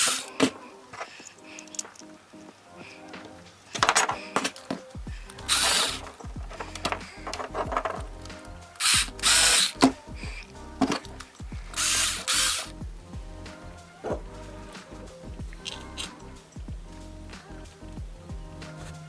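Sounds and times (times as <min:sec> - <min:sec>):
electric screwdriver driving screws: 0:05.5 - 0:06.0, 0:08.8 - 0:09.8, 0:11.8 - 0:12.7.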